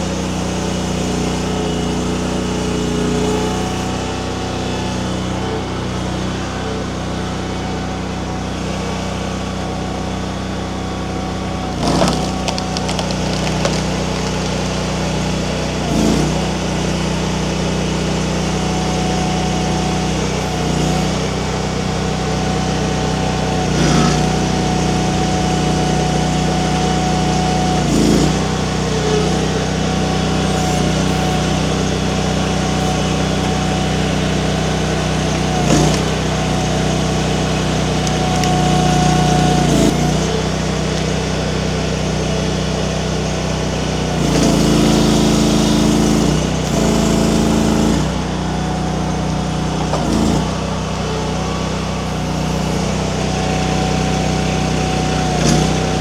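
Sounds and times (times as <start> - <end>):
hydraulic whine: 0.0 - 56.0
skid steer engine running: 0.0 - 56.0
wood cracking: 11.7 - 15.3, 27.9 - 41.2.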